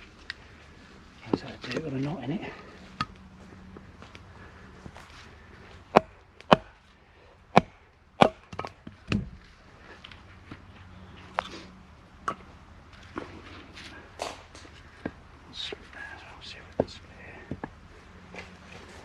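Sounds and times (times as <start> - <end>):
hatchet chopping wood: 5.9 - 6.8, 7.5 - 9.4.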